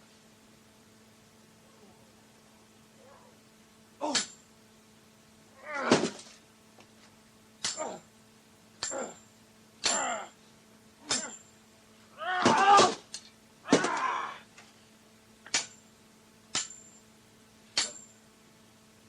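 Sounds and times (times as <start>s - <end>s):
strained voice-like cries: 12.1s - 13.0s, 13.7s - 14.5s.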